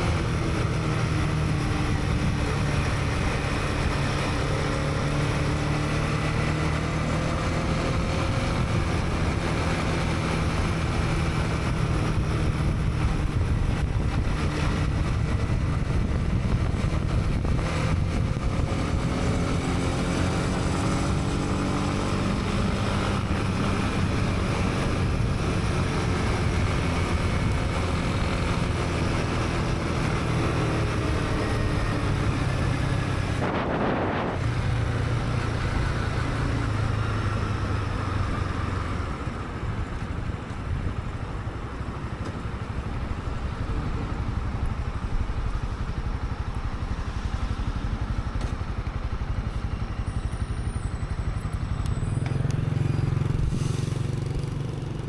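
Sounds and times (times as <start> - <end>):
wind noise on microphone: 0.0 - 41.7
motorcycle engine revving: 0.0 - 55.0.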